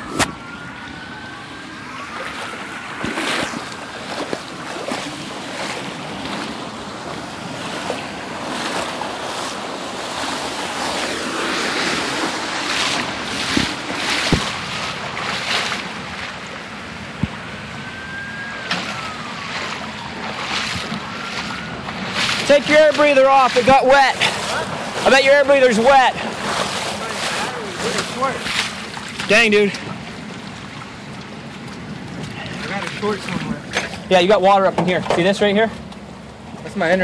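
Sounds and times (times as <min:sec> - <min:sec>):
floodwater rushing and splashing: 0:00.0 - 0:37.0
faint wailing tone: 0:17.6 - 0:22.0.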